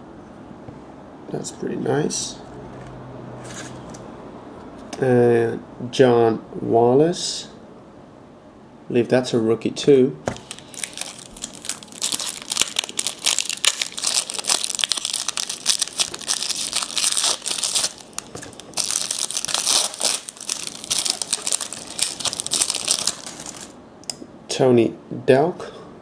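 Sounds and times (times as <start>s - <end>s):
wrapper crinkling and cards rustling: 10.3s - 23.8s.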